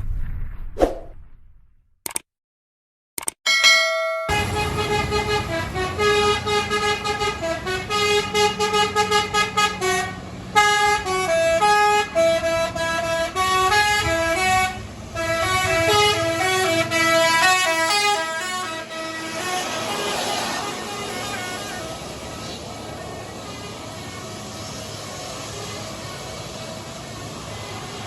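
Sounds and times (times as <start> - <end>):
musical bus horn tune: 4.3 - 22.8
bus engine running: 4.3 - 28.0.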